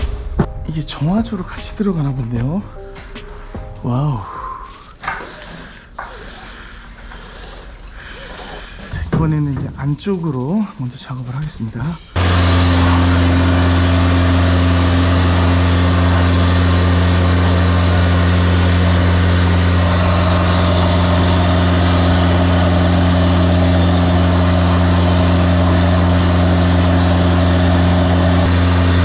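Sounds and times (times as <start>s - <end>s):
drain jetter engine and pump drone: 12.2s - 29.0s.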